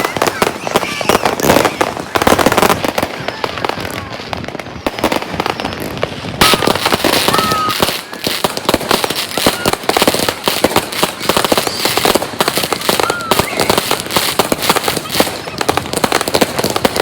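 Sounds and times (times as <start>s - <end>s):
fireworks cracking and banging: 0.0s - 17.0s
firework whistles: 6.4s - 17.0s.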